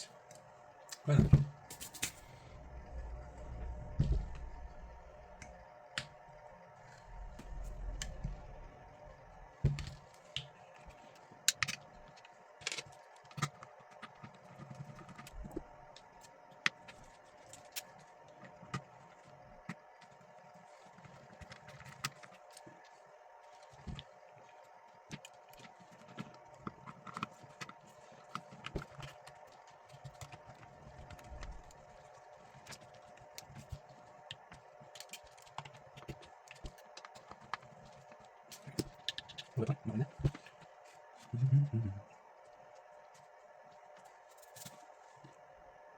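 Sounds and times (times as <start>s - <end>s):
faint steady hum: 0.0s - 45.9s
plastic and metal parts clicking: 25.1s - 39.6s.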